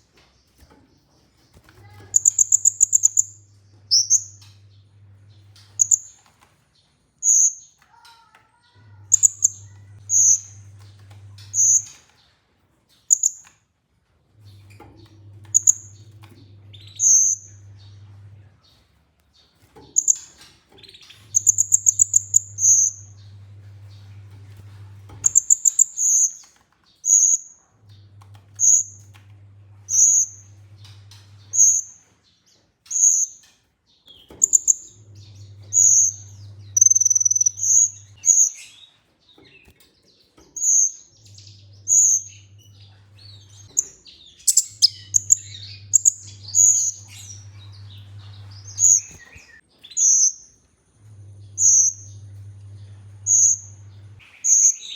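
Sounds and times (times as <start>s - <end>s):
low steady hum: 1.8s - 6.1s, 14.4s - 18.6s, 21.1s - 25.8s, 34.4s - 38.6s, 41.2s - 49.7s, 50.3s - 54.2s
sunbird chirping: 1.8s - 6.1s, 8.9s - 10.8s, 21.0s - 24.2s, 25.2s - 26.4s, 34.3s - 38.8s, 40.6s - 50.6s, 51.2s - 54.9s.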